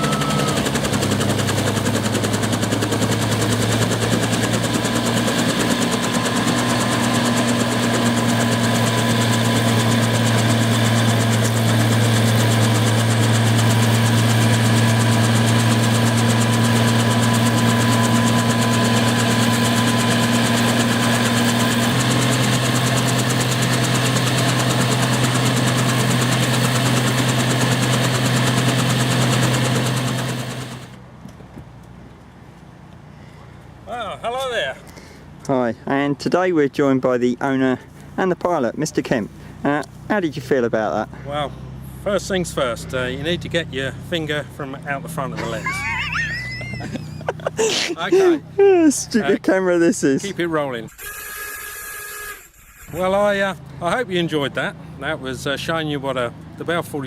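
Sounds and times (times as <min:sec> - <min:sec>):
helicopter engine and rotors: 0:00.0 - 0:31.0, 0:40.9 - 0:51.3, 0:52.5 - 0:57.0.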